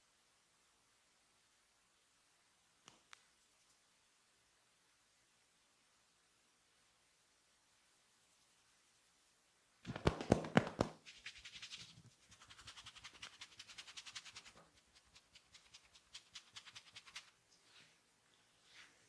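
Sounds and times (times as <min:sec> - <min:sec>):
hands slapping skin: 0:09.8 - 0:14.6.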